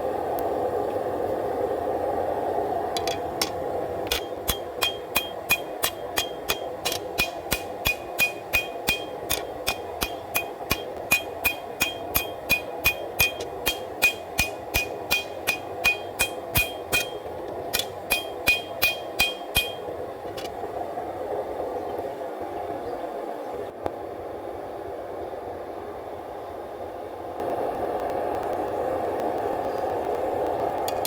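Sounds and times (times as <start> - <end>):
forge burner roaring: 0.0 - 31.0
hammer blows on anvil ringing: 4.1 - 20.0.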